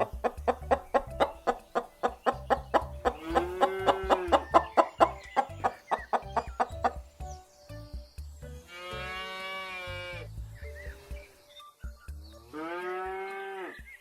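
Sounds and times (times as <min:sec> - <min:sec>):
chicken clucking: 0:00.0 - 0:07.0
background music: 0:00.0 - 0:14.0.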